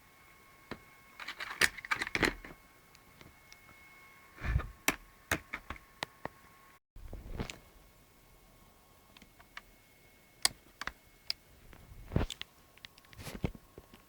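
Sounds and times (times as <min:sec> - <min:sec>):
faint steady high tone: 0:02.6 - 0:04.6.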